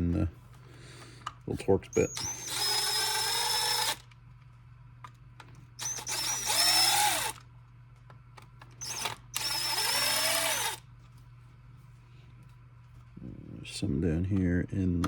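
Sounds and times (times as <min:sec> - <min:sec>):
cordless drill motor whine: 0:01.9 - 0:04.1, 0:05.8 - 0:07.4, 0:08.8 - 0:10.8.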